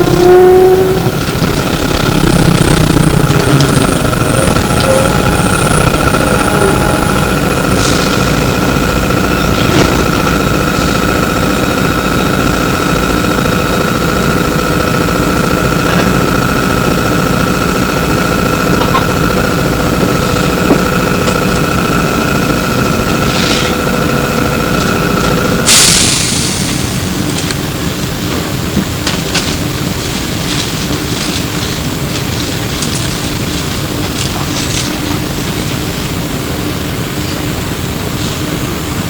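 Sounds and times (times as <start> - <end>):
electric bus high whine: 0.0 - 39.0
low machinery rumble: 0.0 - 39.0
loud air hiss burst: 25.7 - 27.2.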